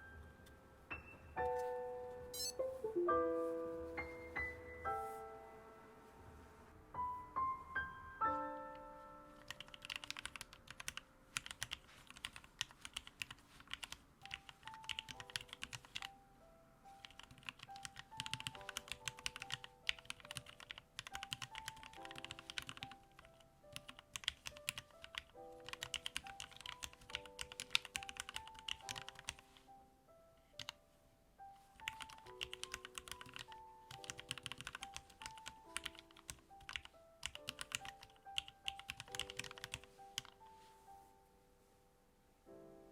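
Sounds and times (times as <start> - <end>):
soft background music: 0.0 - 42.9
mechanical keyboard typing: 9.4 - 16.2, 17.0 - 29.4, 30.6 - 30.8, 31.8 - 40.4.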